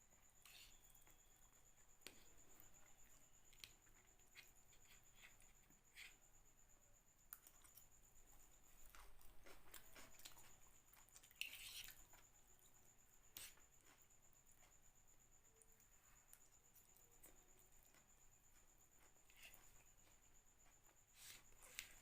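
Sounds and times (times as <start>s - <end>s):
person chewing food: 7.3s - 12.3s.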